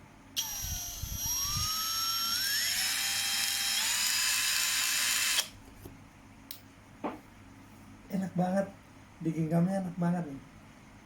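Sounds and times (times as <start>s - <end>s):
cordless drill motor whine: 0.4s - 5.5s.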